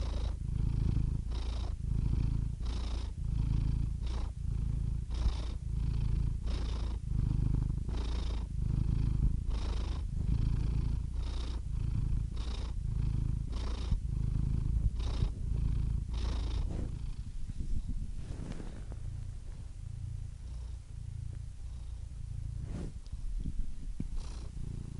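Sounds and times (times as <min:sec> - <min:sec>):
cat purring: 0:00.0 - 0:24.9.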